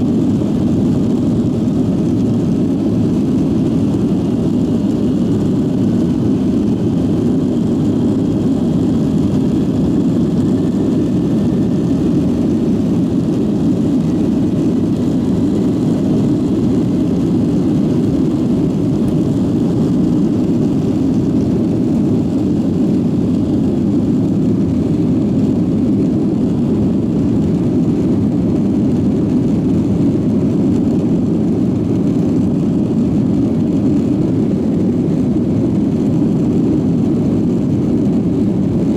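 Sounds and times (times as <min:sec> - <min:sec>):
jet engine cabin rumble: 0:00.0 - 0:38.9.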